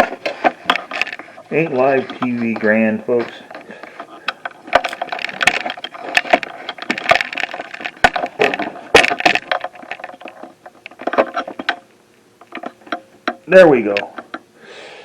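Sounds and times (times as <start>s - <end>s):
tripod head clicks and rattles: 0.0s - 14.5s.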